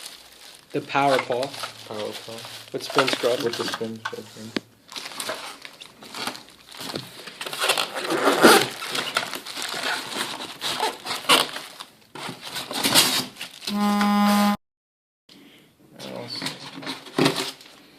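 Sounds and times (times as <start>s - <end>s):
packaging rustling and crinkling: 0.0s - 13.7s.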